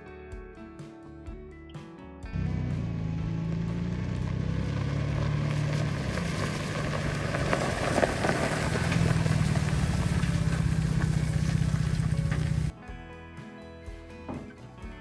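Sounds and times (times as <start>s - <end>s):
vehicle engine humming: 2.4s - 12.7s
loud rattling: 5.4s - 12.7s.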